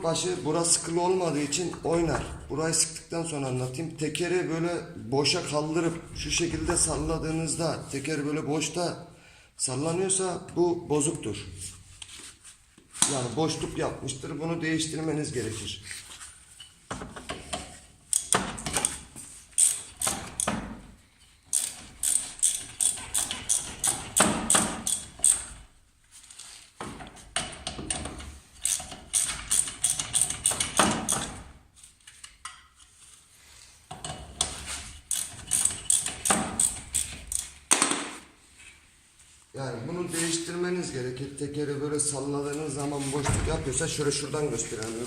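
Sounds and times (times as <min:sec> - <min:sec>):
ratchet wrench clicking: 0:18.1 - 0:20.6, 0:21.5 - 0:25.5, 0:28.6 - 0:31.2, 0:35.1 - 0:37.6.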